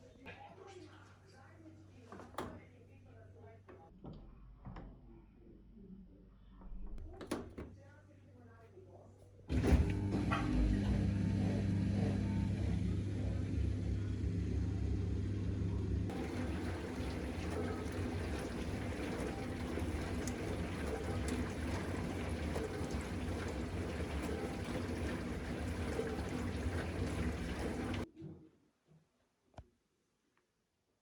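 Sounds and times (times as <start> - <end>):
dishwasher motor hum: 9.5 - 28.1
water spraying inside dishwasher: 9.5 - 28.1.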